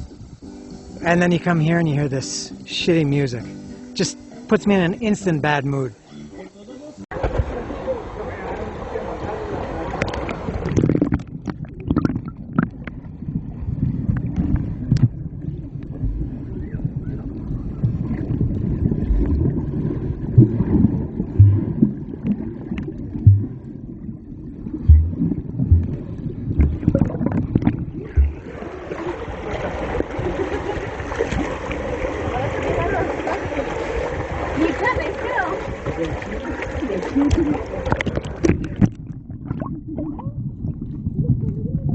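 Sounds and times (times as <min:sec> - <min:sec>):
muffled water sloshing and gurgling: 0:07.1 - 0:41.9
low thumps: 0:17.8 - 0:28.6.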